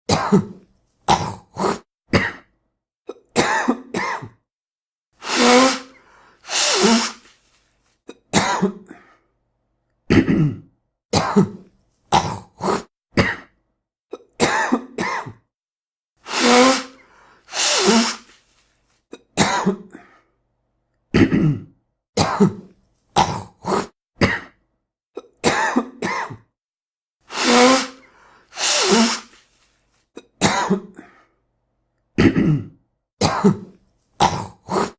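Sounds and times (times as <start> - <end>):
man clearing his throat: 0.1 - 2.5, 3.1 - 4.4, 8.4 - 9.1, 10.1 - 13.5, 21.1 - 22.6, 25.2 - 26.5, 30.4 - 31.2, 32.2 - 34.9
man coughing: 0.1 - 2.5, 3.4 - 4.4, 8.3 - 9.1, 10.1 - 11.6, 14.4 - 15.4, 19.4 - 20.1, 21.2 - 22.6, 25.4 - 26.5, 30.4 - 31.2, 32.2 - 34.9.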